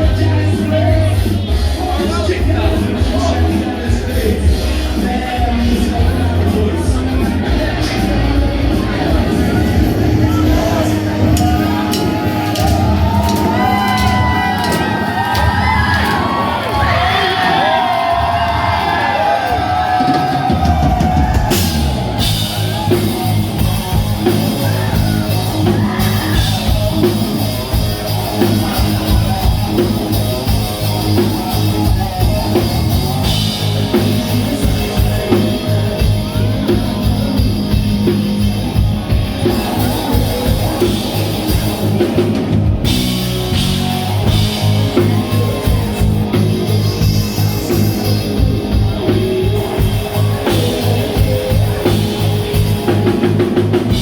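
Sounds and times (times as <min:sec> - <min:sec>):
lead vocals singing: 0:00.0 - 0:23.1
bass guitar: 0:00.0 - 0:54.0
drum-kit beat: 0:00.0 - 0:54.0
electric guitars: 0:00.0 - 0:54.0.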